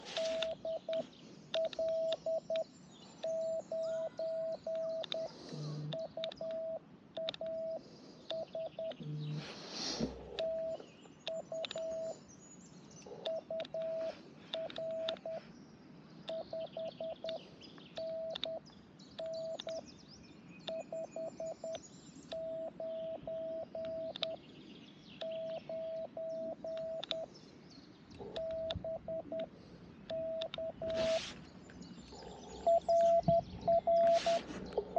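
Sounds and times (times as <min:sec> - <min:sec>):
morse code tone: 0:00.0 - 0:02.6, 0:03.2 - 0:09.4, 0:10.4 - 0:12.2, 0:13.3 - 0:15.4, 0:22.4 - 0:24.3, 0:25.2 - 0:27.3, 0:28.4 - 0:29.5, 0:30.1 - 0:31.3, 0:32.6 - 0:34.9.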